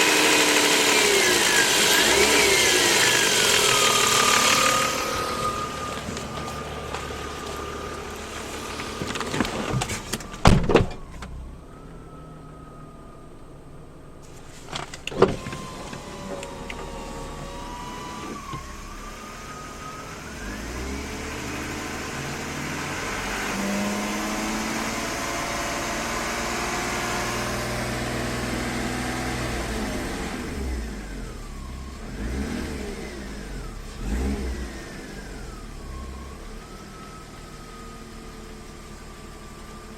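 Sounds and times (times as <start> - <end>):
alternator whine: 0.0 - 20.4
car engine revving: 0.0 - 39.9.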